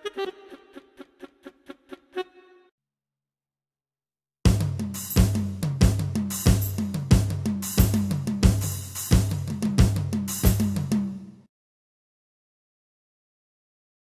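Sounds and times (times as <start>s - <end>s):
drum kit groove: 4.5s - 11.4s.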